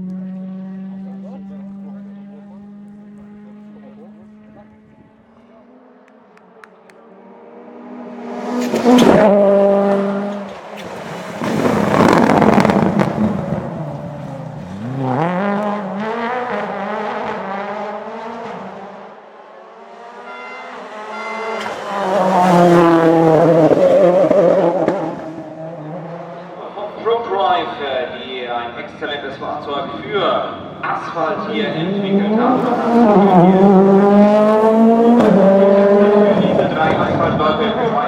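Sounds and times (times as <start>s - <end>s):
rally cars passing at full throttle: 0.0s - 38.0s
engine revving hard: 7.1s - 26.6s, 30.9s - 38.0s.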